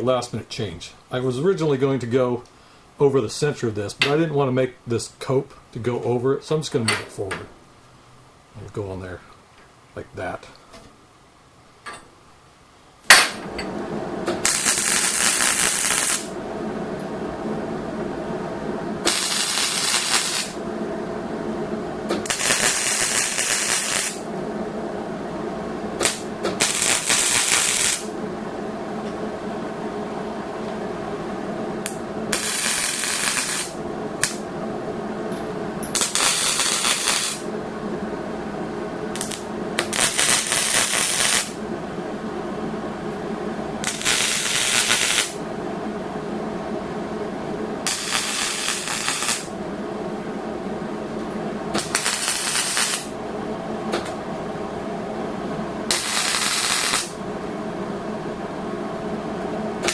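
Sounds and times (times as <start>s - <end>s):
steady hum: 0.0s - 59.9s
hissing welding arc: 14.3s - 16.4s, 19.0s - 20.6s, 22.1s - 24.3s, 26.0s - 28.1s, 31.8s - 34.4s, 35.8s - 37.5s, 39.1s - 41.6s, 43.8s - 45.4s, 47.8s - 49.5s, 51.8s - 53.2s, 55.9s - 57.2s.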